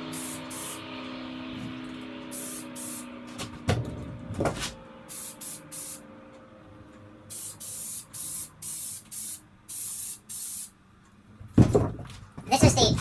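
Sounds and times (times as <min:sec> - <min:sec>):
spray paint can hissing: 0:00.0 - 0:00.8, 0:02.3 - 0:03.1, 0:05.1 - 0:06.0, 0:07.3 - 0:10.7
knock: 0:11.6 - 0:12.2.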